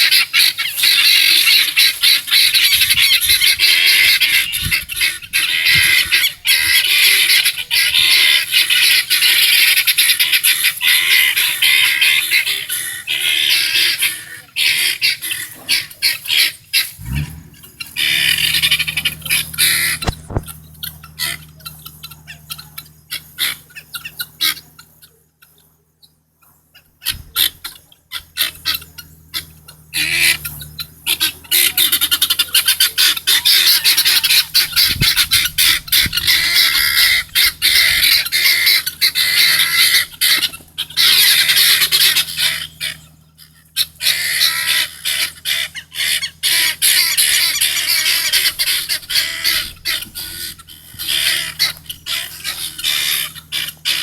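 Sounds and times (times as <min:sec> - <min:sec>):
guineafowl calling: 0:00.0 - 0:54.0.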